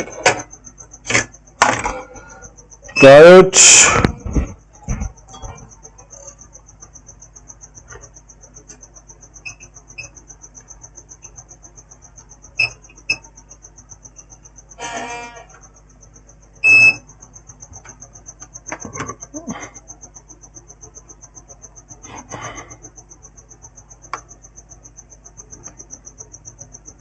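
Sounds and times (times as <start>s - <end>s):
multimeter beeping: 0.0s - 6.3s, 7.8s - 15.8s, 16.4s - 19.7s.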